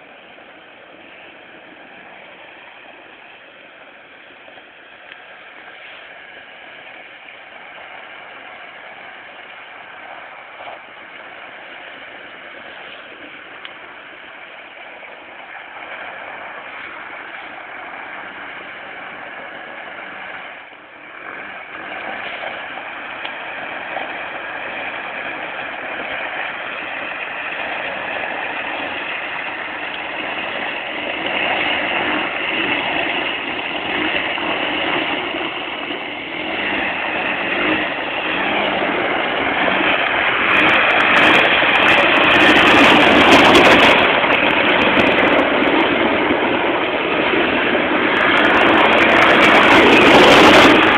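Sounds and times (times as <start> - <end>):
atv engine running: 0.0 - 50.9.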